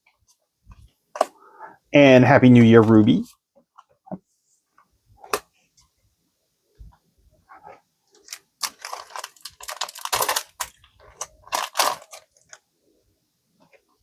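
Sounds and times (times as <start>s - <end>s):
foil wrapper crinkling: 8.1s - 12.6s.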